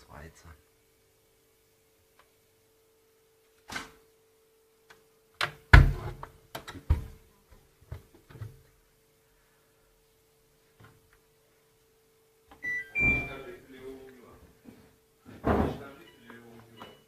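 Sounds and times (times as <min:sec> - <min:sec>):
faint hum: 0:00.0 - 0:17.0
knocks and thumps: 0:15.3 - 0:15.8.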